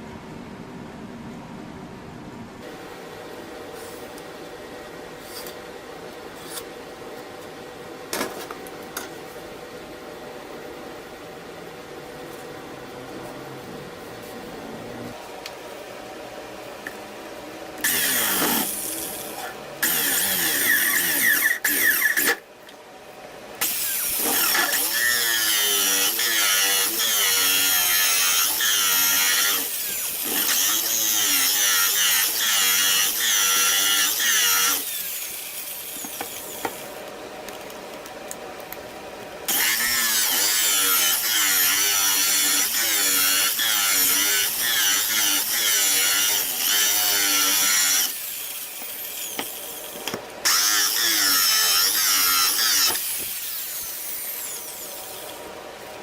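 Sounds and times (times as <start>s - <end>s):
power tool whining on wood: 17.8s - 22.4s, 23.6s - 36.9s, 39.5s - 55.4s.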